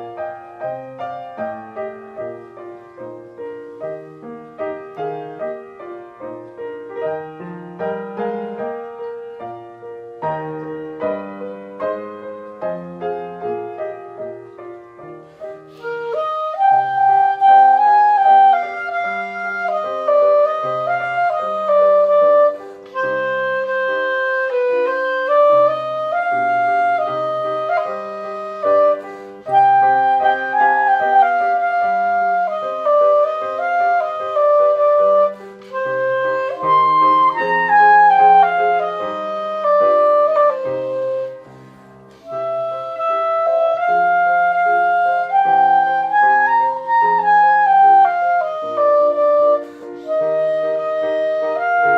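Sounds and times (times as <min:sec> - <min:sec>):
clarinet melody: 0:00.0 - 0:51.9
piano playing: 0:00.0 - 0:51.9.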